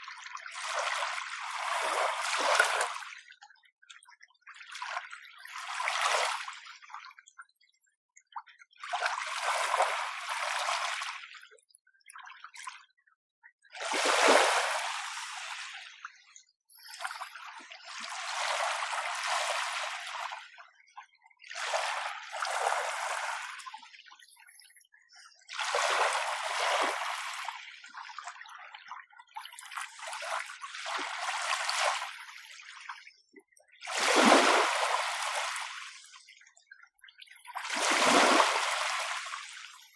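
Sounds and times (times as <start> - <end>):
gentle waves washing in: 0.8 - 3.1, 9.1 - 11.2, 13.8 - 16.0, 18.0 - 20.4, 21.7 - 23.7, 25.6 - 27.6, 33.9 - 36.0, 37.6 - 39.8.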